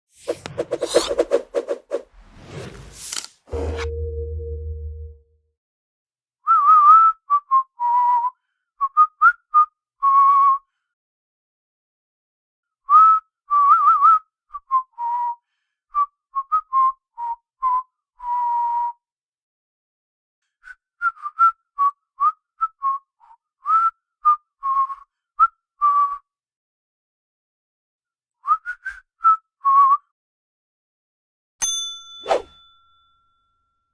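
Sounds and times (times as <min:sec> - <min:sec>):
man whistling a tune: 0:06.4 - 0:10.7, 0:12.8 - 0:19.1, 0:20.5 - 0:26.4, 0:28.4 - 0:30.1.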